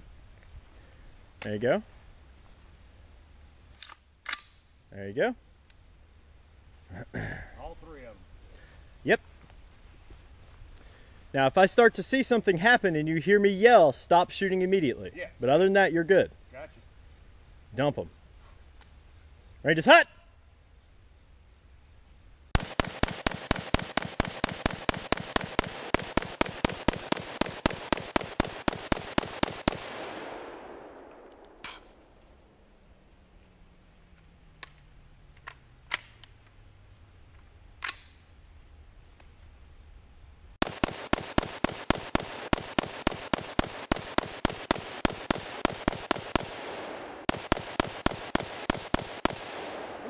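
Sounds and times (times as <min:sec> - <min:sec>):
rifle firing rapidly: 0:22.6 - 0:30.7, 0:40.6 - 0:50.0
isolated clicks: 0:30.9 - 0:31.9, 0:34.1 - 0:36.6.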